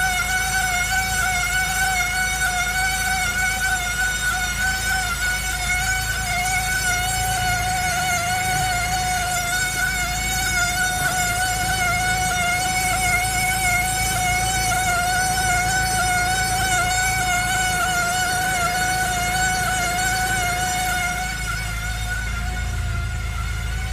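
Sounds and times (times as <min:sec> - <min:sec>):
high-pitched squeal: 0:05.5 - 0:23.9.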